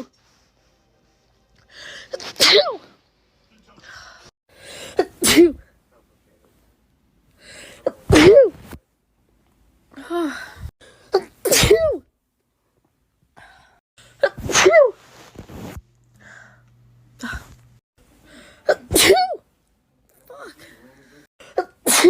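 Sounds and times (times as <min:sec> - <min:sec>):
person sneezing: 0:02.1 - 0:03.0, 0:04.9 - 0:05.6, 0:07.8 - 0:08.8, 0:11.1 - 0:12.0, 0:14.2 - 0:15.0, 0:18.6 - 0:19.4, 0:21.4 - 0:22.0.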